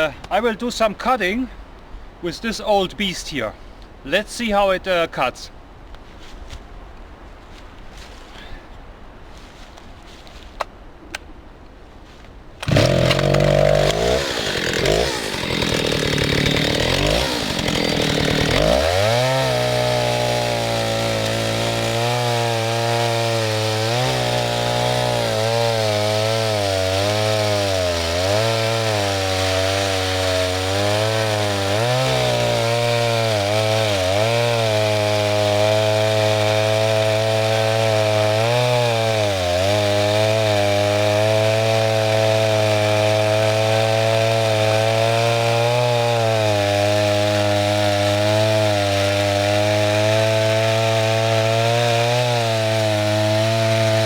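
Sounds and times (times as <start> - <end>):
chainsaw cutting wood: 12.6 - 54.0.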